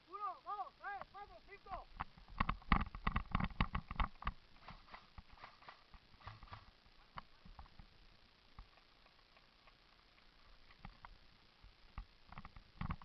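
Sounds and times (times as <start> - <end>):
sharp clicks and snaps: 8.5 - 11.2, 11.9 - 13.0.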